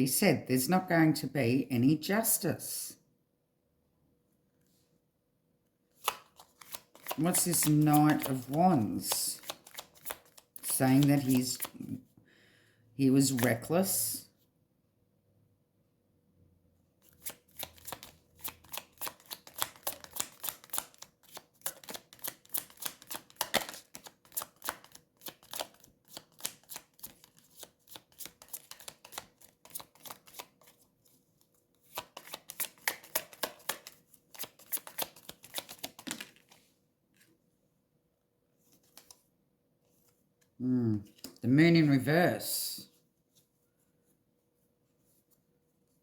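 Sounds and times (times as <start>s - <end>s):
cards being shuffled: 5.9s - 12.0s, 13.3s - 13.7s, 17.0s - 30.9s, 31.7s - 37.3s, 38.6s - 39.2s.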